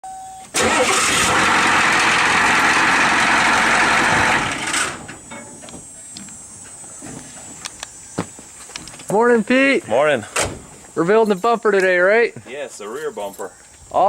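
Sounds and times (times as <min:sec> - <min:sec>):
loud engine running: 0:00.6 - 0:05.2.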